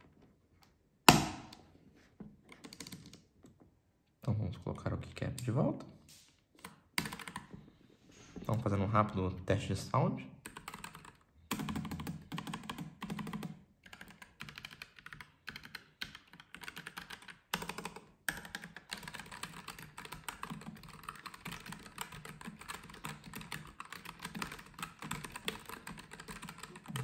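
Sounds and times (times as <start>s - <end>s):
mechanical keyboard typing: 2.5s - 3.2s, 6.6s - 7.5s, 10.5s - 27.0s.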